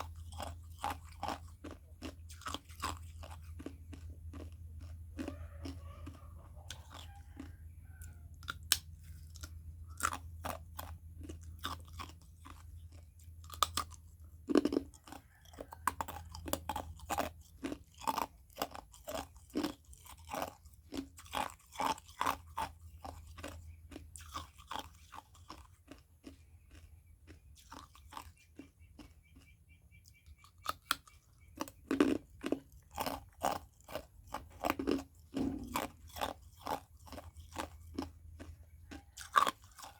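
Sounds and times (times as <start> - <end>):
low steady hum: 34.2 - 39.2.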